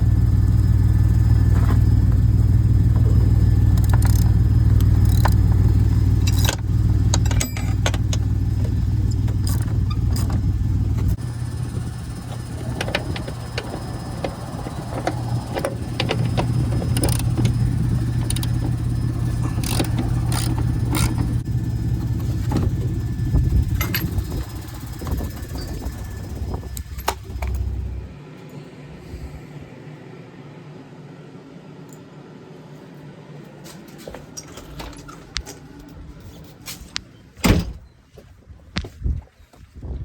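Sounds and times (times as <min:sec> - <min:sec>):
vehicle engine running: 0:00.0 - 0:28.2.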